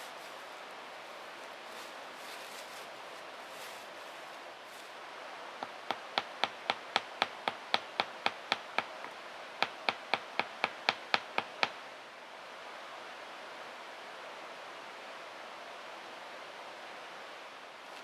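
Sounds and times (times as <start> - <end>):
sharp evenly spaced taps: 5.6 - 11.8.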